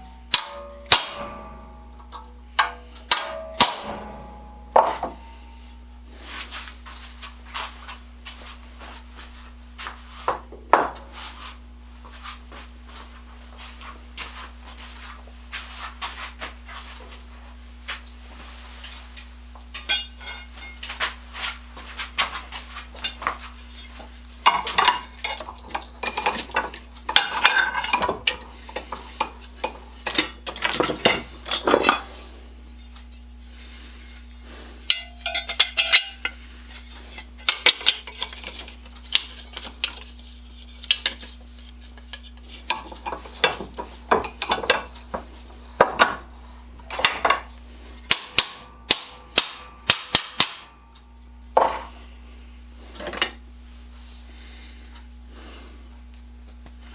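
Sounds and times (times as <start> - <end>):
steady low hum: 0.0 - 56.9
metal tools clinking: 18.8 - 21.0, 23.0 - 32.2, 34.9 - 45.1.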